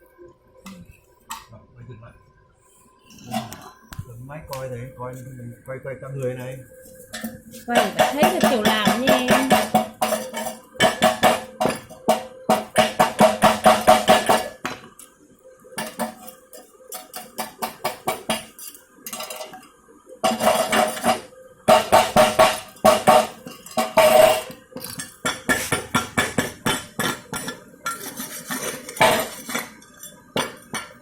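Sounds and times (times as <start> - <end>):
rapid metal tapping: 7.2 - 14.7.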